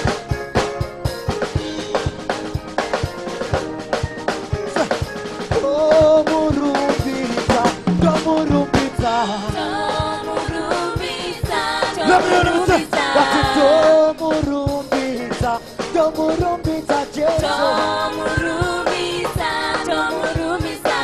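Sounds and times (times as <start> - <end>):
drums steady beat: 0.0 - 21.0
people singing gospel: 4.6 - 21.0.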